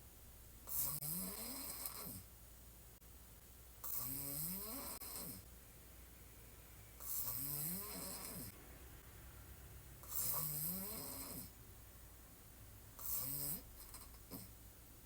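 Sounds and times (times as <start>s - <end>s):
woman snoring: 0.7s - 2.2s, 3.8s - 5.4s, 7.0s - 8.6s, 10.0s - 11.5s, 13.0s - 14.5s.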